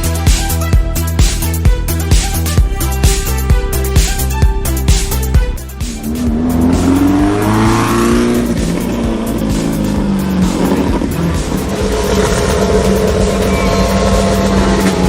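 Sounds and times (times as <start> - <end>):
rally car engine revving: 4.7 - 15.0.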